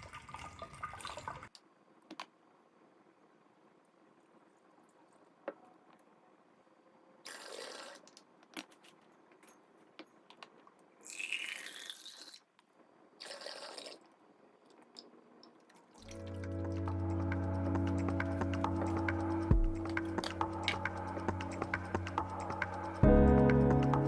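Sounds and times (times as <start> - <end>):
water pouring into container: 0.0 - 1.5, 11.0 - 12.5, 13.2 - 14.1, 16.0 - 18.9.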